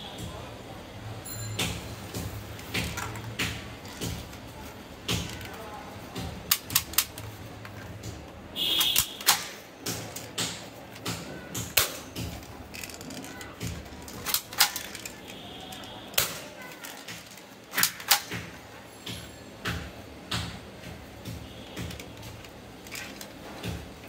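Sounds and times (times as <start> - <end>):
toy blaster clicks and snaps: 6.5 - 7.9, 8.7 - 18.4.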